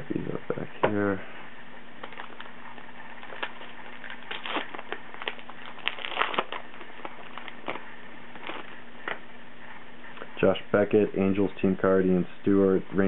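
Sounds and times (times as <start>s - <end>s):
card pack wrapper crinkling: 2.0s - 2.6s, 3.2s - 9.2s.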